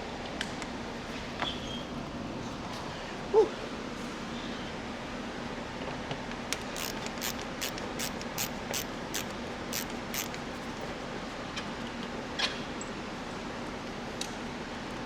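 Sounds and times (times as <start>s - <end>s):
steady background hum: 0.0s - 15.0s
ratchet wrench clicking: 6.6s - 10.4s.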